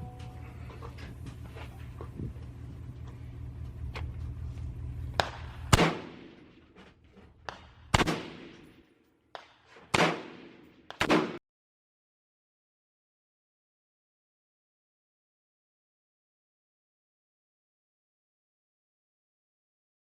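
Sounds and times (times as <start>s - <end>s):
steady low hum: 0.0s - 9.0s
loud gunshots with echo: 5.2s - 6.6s, 7.9s - 8.8s, 9.9s - 11.4s.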